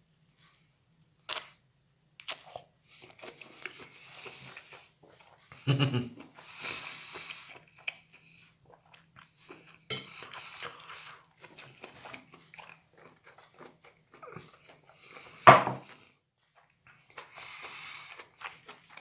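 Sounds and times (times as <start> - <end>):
person chewing: 2.2 - 19.0.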